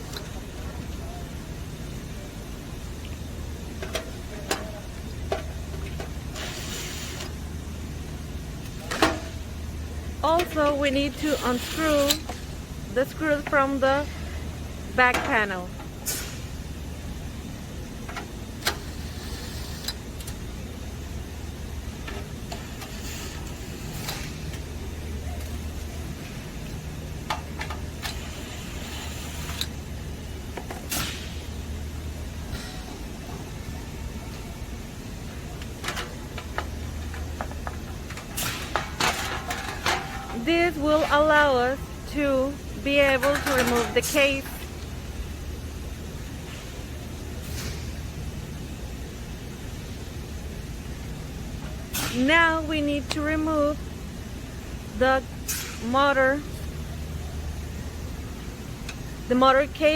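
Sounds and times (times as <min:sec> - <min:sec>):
steady low hum: 0:00.0 - 0:59.9
scraping hiss: 0:06.4 - 0:07.4, 0:18.8 - 0:20.0.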